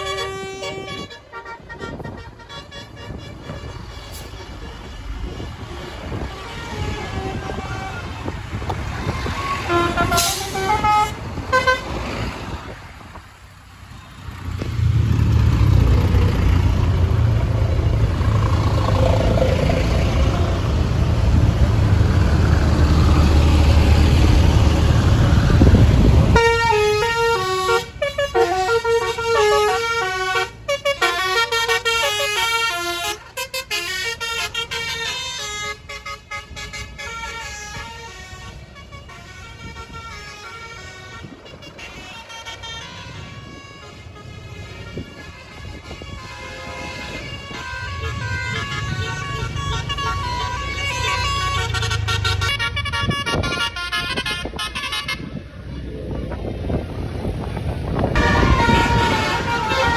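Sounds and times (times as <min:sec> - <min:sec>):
bus horns playing short melodies: 0:00.0 - 0:08.4, 0:09.4 - 0:12.0, 0:26.0 - 0:55.6, 0:58.2 - 0:59.9
bus engine running loud: 0:00.0 - 0:59.9.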